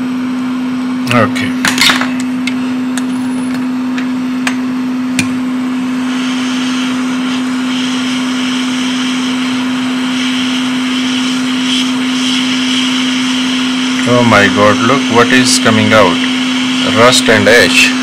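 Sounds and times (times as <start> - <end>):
hot-air station fan hum: 0.0 - 18.0
high-pitched air hiss: 6.0 - 18.0.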